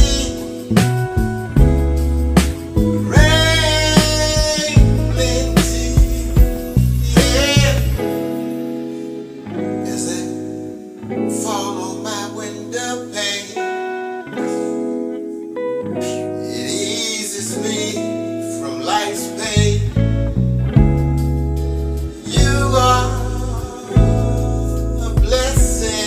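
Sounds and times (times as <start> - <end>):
bass line: 0.0 - 8.0, 19.6 - 26.0
drums: 0.0 - 8.0, 22.4 - 23.3, 24.0 - 26.0
guitar chords: 0.0 - 26.0
keyboard chords: 0.0 - 26.0.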